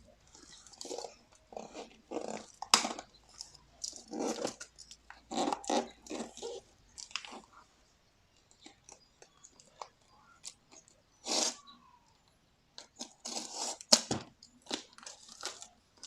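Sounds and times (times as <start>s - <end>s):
package crinkling and tearing: 13.0s - 15.8s.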